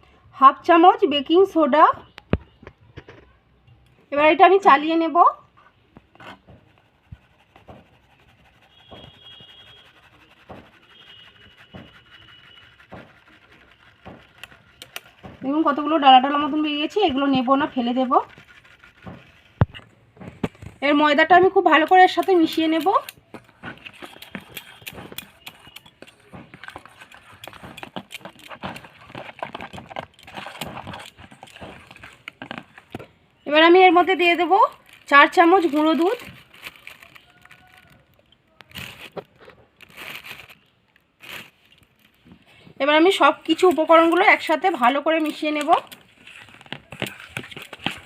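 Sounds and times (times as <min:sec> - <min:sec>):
utensil clicking against bowl: 0:21.9 - 0:29.6.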